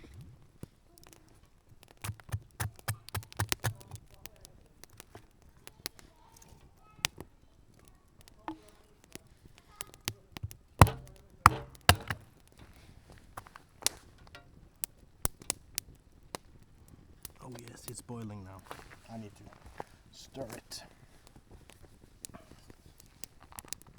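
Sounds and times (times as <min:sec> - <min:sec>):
campfire wood crackling: 0:00.0 - 0:23.9
loud knocks: 0:10.8 - 0:12.2.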